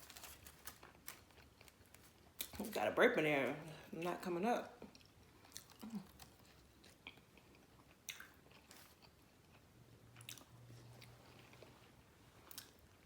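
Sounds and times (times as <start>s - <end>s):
faint chewing: 4.8s - 13.0s
soft mouth clicks: 8.1s - 8.4s.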